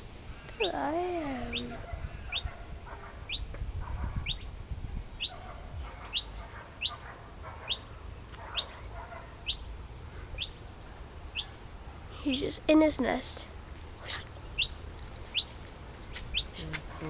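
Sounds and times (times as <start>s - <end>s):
bird chick chirping: 0.4s - 10.7s, 11.3s - 11.6s, 14.4s - 16.7s.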